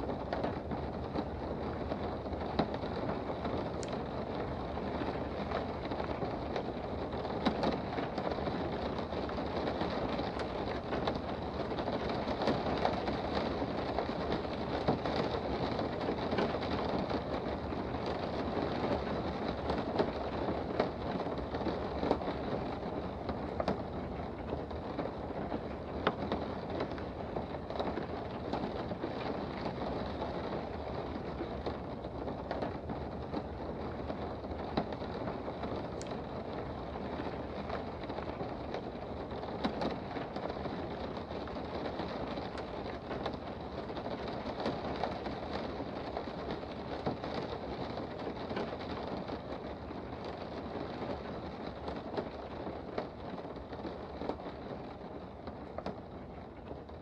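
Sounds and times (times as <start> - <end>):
steady rain patter: 0.0 - 57.0
single raindrops ticking: 2.6 - 4.0.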